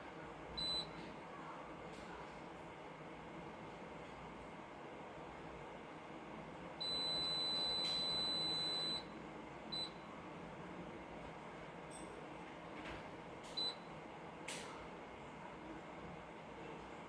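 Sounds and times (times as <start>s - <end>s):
washing machine beeping: 0.5s - 1.1s, 6.8s - 10.1s, 13.4s - 14.0s.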